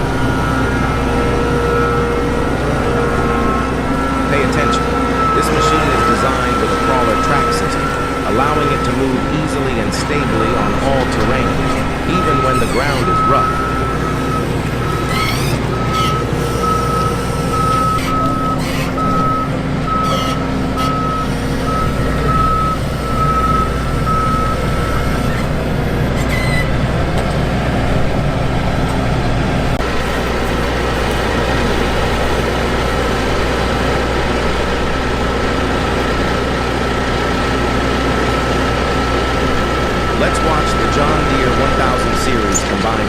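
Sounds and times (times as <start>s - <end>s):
warning beeper: 0.0s - 25.4s, 39.4s - 43.0s
engine low rumble: 0.0s - 43.0s.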